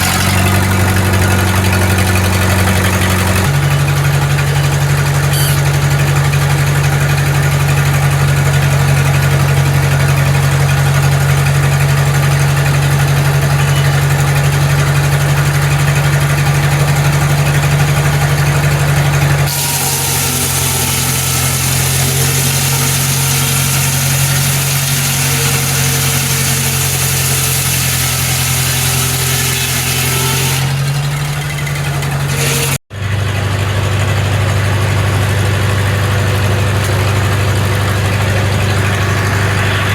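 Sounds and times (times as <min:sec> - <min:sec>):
engine running steadily: 0:00.0 - 0:39.9
hiss: 0:19.5 - 0:30.5.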